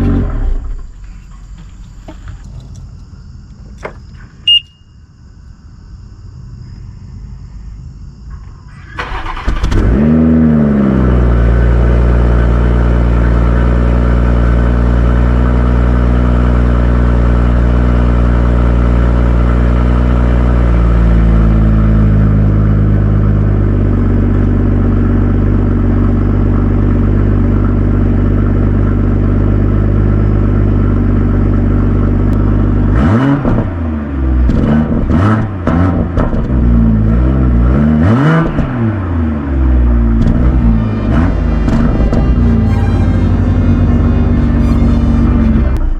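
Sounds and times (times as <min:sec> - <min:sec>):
car engine revving: 0:09.0 - 0:18.2, 0:36.9 - 0:45.9
car engine idling: 0:39.7 - 0:45.9.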